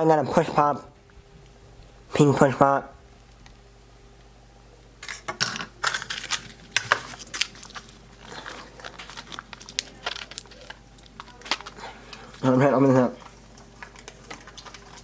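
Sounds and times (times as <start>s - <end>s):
plastic packaging crinkling: 5.0s - 15.0s.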